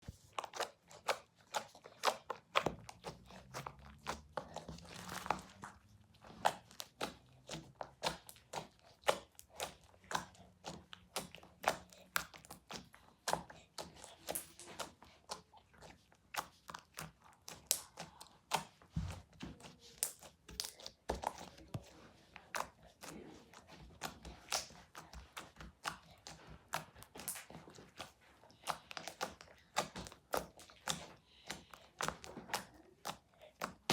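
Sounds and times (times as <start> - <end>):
slime crackling and popping: 16.3 - 18.7.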